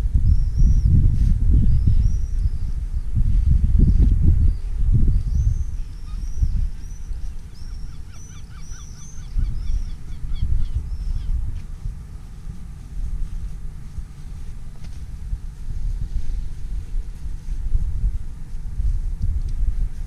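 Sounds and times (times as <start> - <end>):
wind on microphone: 0.0 - 20.0
birds calling high notes: 5.3 - 11.3.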